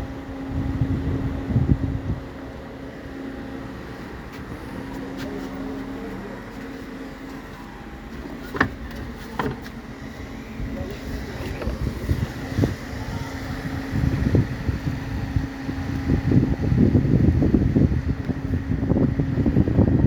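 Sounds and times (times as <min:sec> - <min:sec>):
boat engine running: 0:00.0 - 0:20.0.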